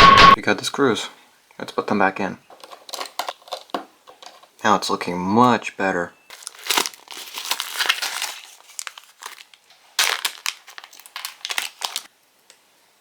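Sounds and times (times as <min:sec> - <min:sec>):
plastic wrapping crinkling: 0:02.5 - 0:04.6, 0:06.2 - 0:12.1.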